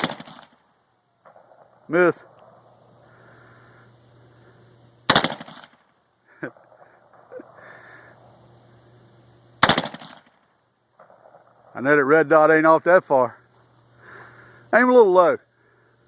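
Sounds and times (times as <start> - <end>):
rifle shots with echo: 0.0 - 0.6, 1.2 - 2.7, 5.1 - 5.8, 9.6 - 11.7.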